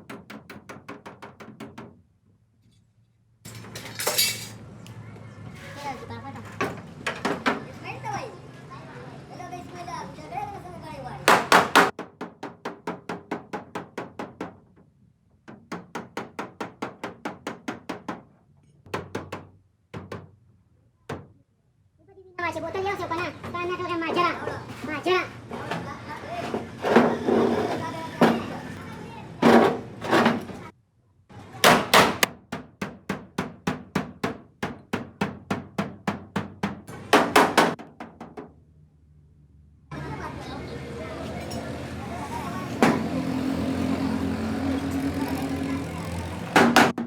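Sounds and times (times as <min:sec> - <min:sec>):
hammer tapping on sheet metal: 0:00.0 - 0:02.0.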